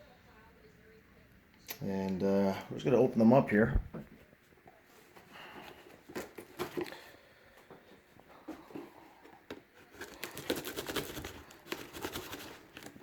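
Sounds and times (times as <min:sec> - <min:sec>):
packaging crinkling and tearing: 0:09.8 - 0:13.0.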